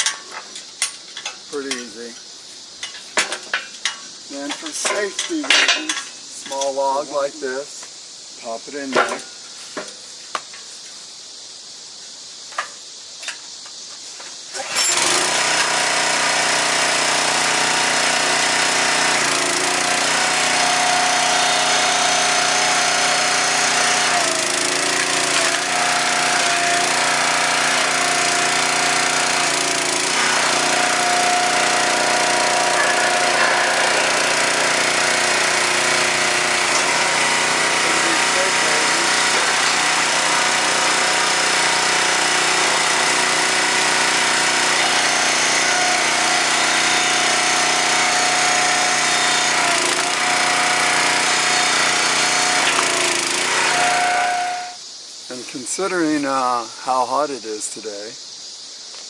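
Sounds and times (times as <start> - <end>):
log splitter engine running: 14.6 - 54.6.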